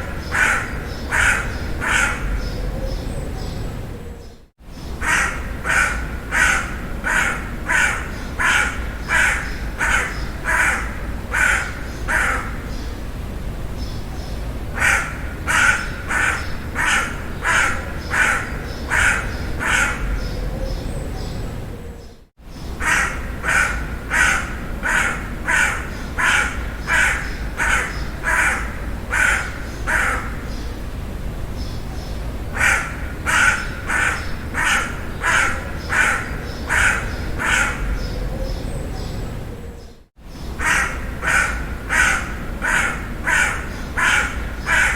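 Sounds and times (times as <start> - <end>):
crow cawing: 0.0 - 2.4, 5.0 - 12.7, 14.8 - 20.2, 22.8 - 30.5, 32.5 - 38.0, 40.6 - 44.9.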